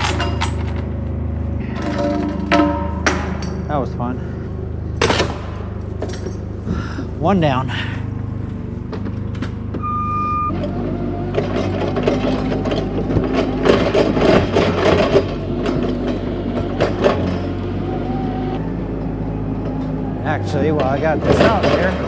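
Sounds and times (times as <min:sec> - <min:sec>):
forklift engine running: 0:00.0 - 0:22.0
rattling and clanking: 0:00.0 - 0:22.0
short beep: 0:09.8 - 0:10.5.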